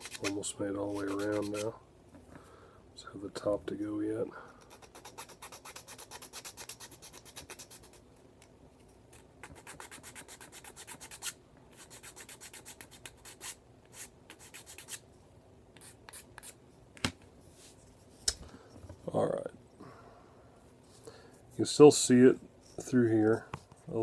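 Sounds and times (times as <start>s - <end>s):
hand file scraping plastic: 0.0s - 1.7s.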